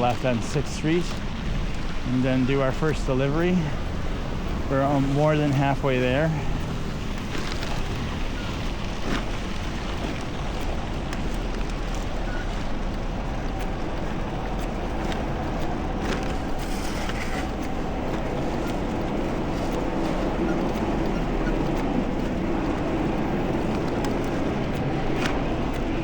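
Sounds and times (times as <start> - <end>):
faint steady engine hum: 0.0 - 26.0
traffic noise: 0.0 - 26.0
wind: 0.0 - 26.0.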